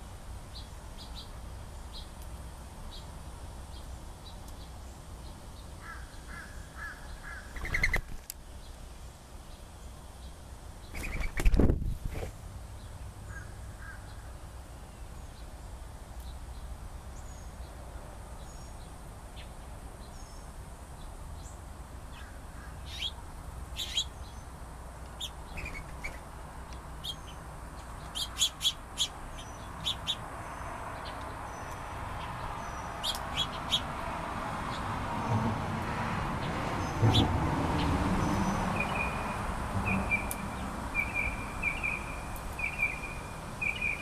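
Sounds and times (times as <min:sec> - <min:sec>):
songbirds chirping: 0:00.0 - 0:44.0
sharp bird chip calls: 0:05.8 - 0:08.2, 0:10.9 - 0:11.6, 0:22.2 - 0:24.4, 0:25.2 - 0:26.3, 0:28.0 - 0:33.9, 0:38.8 - 0:44.0.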